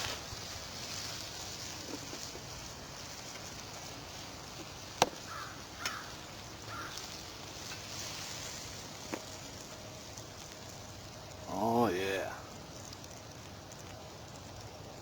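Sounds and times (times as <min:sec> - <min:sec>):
campfire hissing: 0:00.0 - 0:15.0
fire popping: 0:00.0 - 0:15.0
crow cawing faintly: 0:05.1 - 0:07.3.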